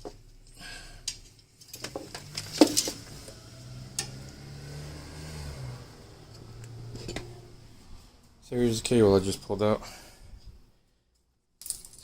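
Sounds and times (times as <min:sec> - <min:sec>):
metal tools clinking: 0:00.4 - 0:03.4.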